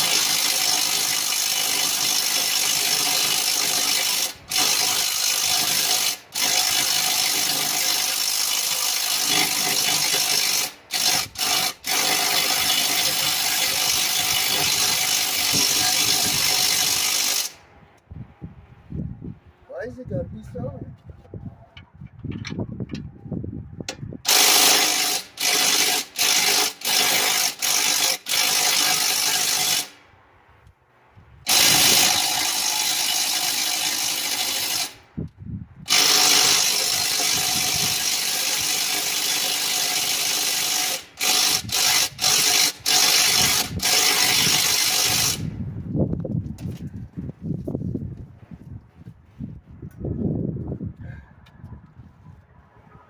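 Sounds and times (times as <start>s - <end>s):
power tool grinding metal: 0.0s - 17.6s, 24.3s - 29.9s, 31.5s - 35.0s, 35.9s - 45.5s.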